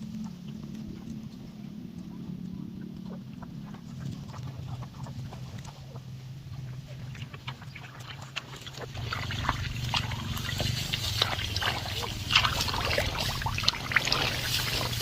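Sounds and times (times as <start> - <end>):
steady low hum: 0.0 - 15.0
rustling of rice stalks: 10.0 - 15.0.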